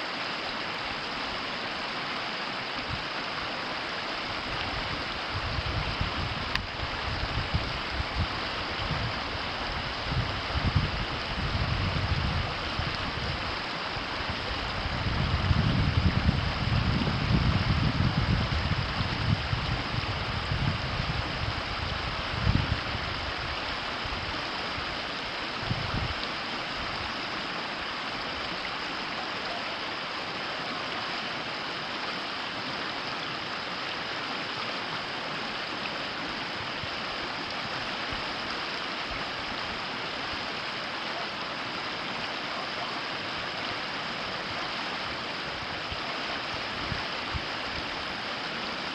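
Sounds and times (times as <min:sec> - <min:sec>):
river water rushing: 0:00.0 - 0:48.9
low rumbling gusts: 0:04.3 - 0:25.0, 0:25.6 - 0:27.1.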